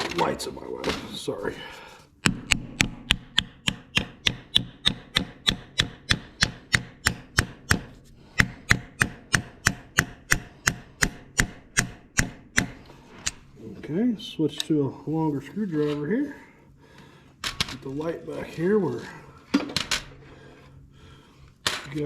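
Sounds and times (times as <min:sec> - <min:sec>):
hammer striking screwdriver: 0:02.2 - 0:13.4.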